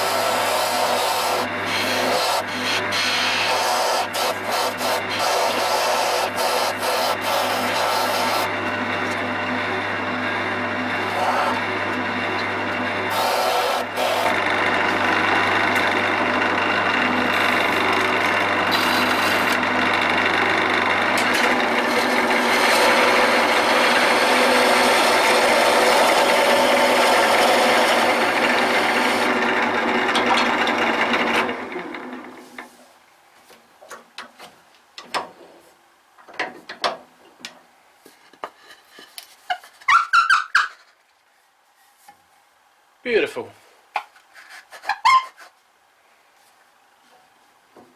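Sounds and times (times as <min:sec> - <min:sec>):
chisel cutting hiss: 0:00.0 - 0:08.5
lathe motor hum: 0:00.0 - 0:32.4
short squeak: 0:39.8 - 0:41.0, 0:44.8 - 0:45.5.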